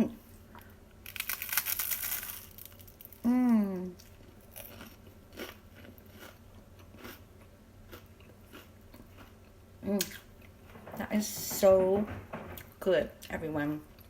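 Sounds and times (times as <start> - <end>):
crunching bite: 1.1 - 3.3
faint chewing: 3.8 - 11.1.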